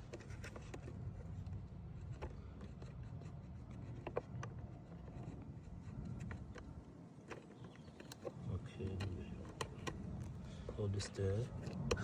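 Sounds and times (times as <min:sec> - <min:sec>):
light scraping of plastic parts: 0:00.0 - 0:12.0
small plastic clicks: 0:06.0 - 0:10.4.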